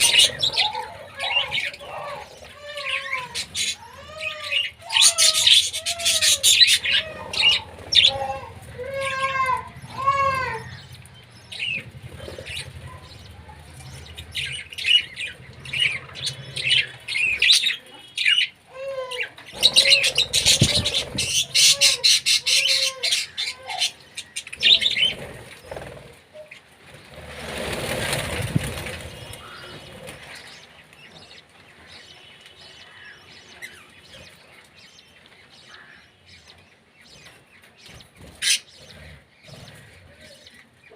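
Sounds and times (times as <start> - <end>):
birds calling and chirping: 0.0 - 40.9
wings flapping: 24.7 - 26.2, 26.8 - 30.5.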